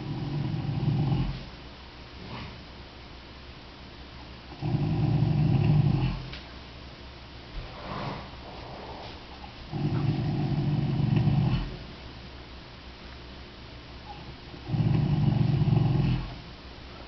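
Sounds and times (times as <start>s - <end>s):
horse snoring: 0.0s - 1.4s, 4.5s - 6.3s, 7.6s - 11.8s, 14.1s - 16.4s.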